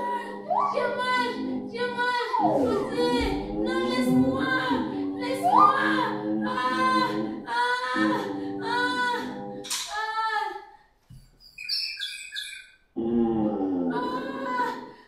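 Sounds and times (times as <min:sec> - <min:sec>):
high chirping tweets: 0:11.2 - 0:12.9
cartoon character wailing and moaning: 0:13.2 - 0:14.8.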